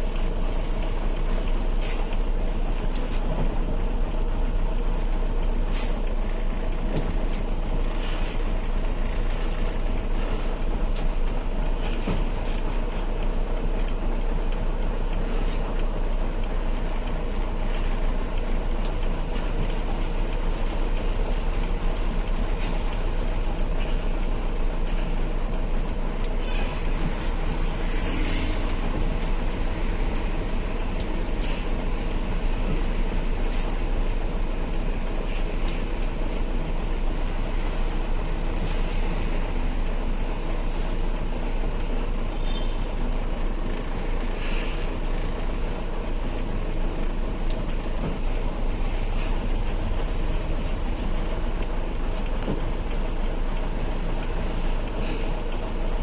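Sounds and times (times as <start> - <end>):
heavy truck engine drone: 0.0 - 56.0
tyre and road noise: 0.0 - 56.0.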